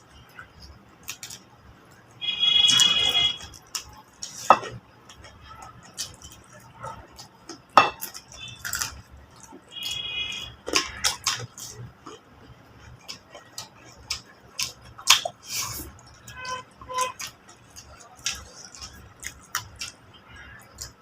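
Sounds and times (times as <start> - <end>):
chewing: 2.7 - 21.0.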